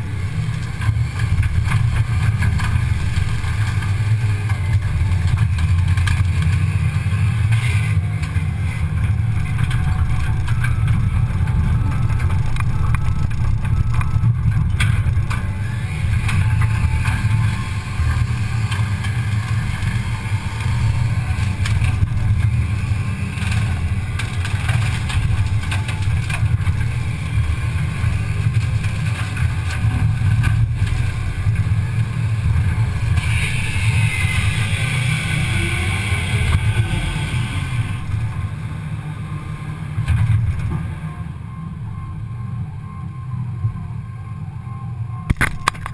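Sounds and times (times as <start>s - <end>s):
excavator diesel engine rumbling: 0.0s - 45.9s.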